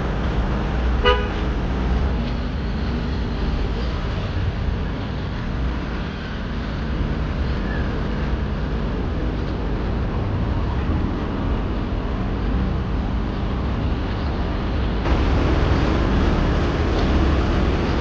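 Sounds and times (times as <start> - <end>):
car road and engine noise: 0.0 - 18.0.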